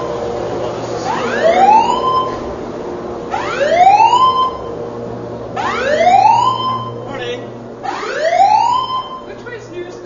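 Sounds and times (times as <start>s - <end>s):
fire alarm whoop tone: 1.1s - 2.4s, 3.3s - 4.7s, 5.6s - 7.1s, 7.8s - 9.3s.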